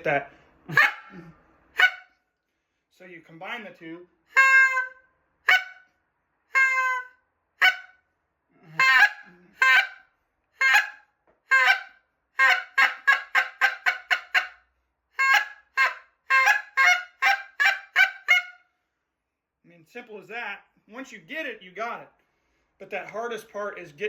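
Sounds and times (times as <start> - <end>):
goose call honks: 0.7 - 2.1, 4.3 - 5.8, 6.5 - 7.9, 8.6 - 10.0, 10.6 - 14.5.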